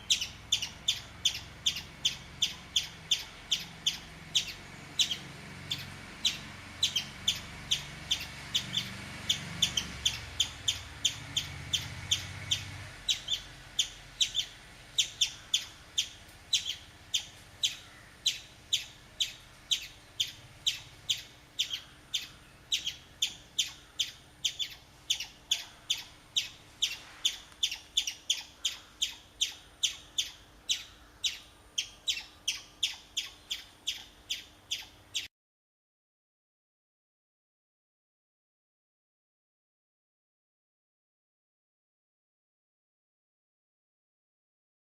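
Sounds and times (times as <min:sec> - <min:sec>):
chipmunk chipping: 0:00.0 - 0:35.3.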